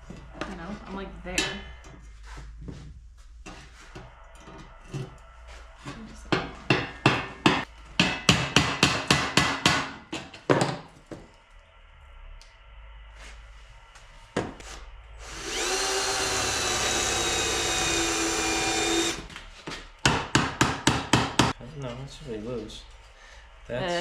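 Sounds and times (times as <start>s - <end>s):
power drill spinning: 15.2s - 19.3s.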